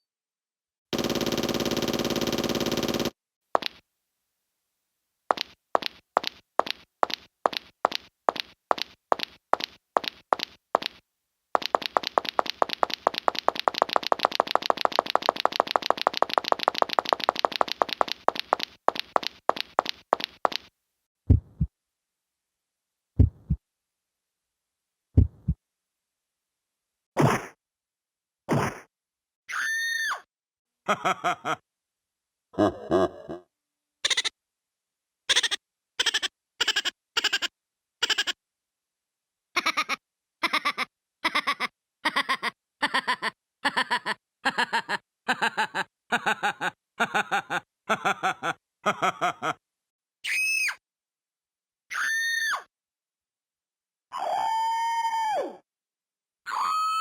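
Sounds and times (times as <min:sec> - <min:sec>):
heartbeat sound effect: 0:21.3 - 0:21.7, 0:23.2 - 0:23.6, 0:25.2 - 0:25.6.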